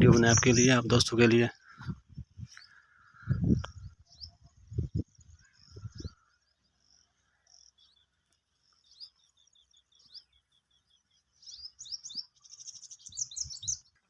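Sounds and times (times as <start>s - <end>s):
flock of birds chirping: 0.0s - 14.0s.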